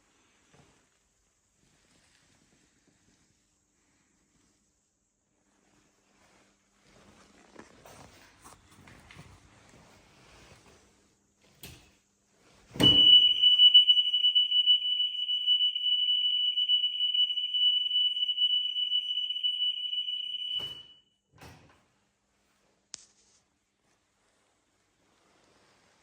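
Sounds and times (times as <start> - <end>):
reverse warning buzzer: 12.8 - 21.0.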